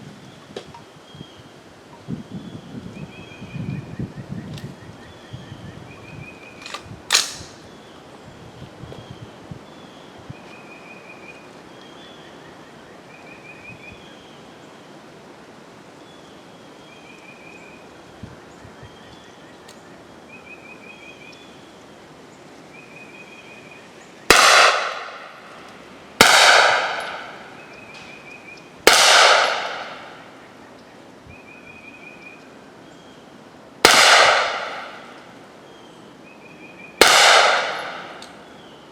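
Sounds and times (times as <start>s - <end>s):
sharp click: 6.6s - 7.6s
gunshots with echo: 24.3s - 25.4s, 26.2s - 27.5s, 28.9s - 30.2s, 33.9s - 35.1s, 37.0s - 38.2s.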